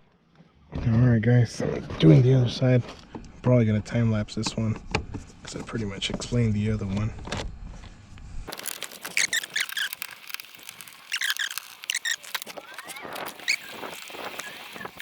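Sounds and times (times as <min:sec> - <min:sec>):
rapid clicks: 0:08.5 - 0:15.0
sped-up squeaky voice chirps: 0:08.6 - 0:15.0.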